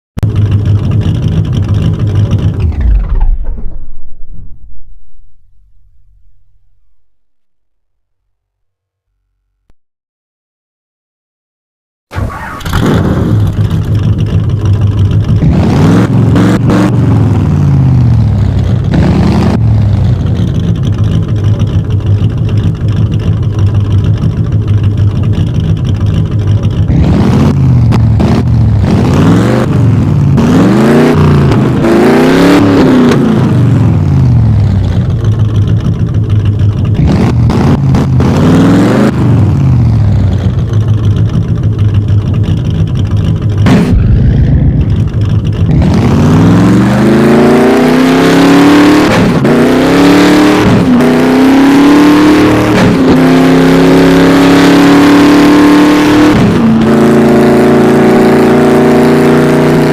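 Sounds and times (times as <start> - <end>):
race car engine revving: 12.1 - 59.9.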